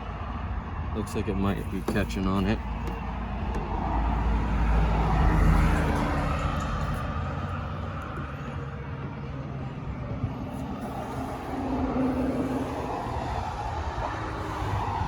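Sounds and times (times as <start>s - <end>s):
vehicle passing by: 3.1s - 15.0s.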